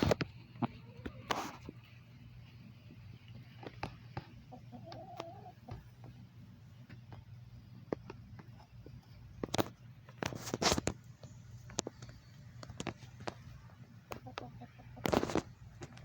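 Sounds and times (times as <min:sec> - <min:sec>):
poultry clicks and scratches: 0:00.0 - 0:01.9, 0:03.2 - 0:06.2, 0:06.8 - 0:16.0
poultry calling: 0:04.3 - 0:06.0, 0:14.1 - 0:15.3.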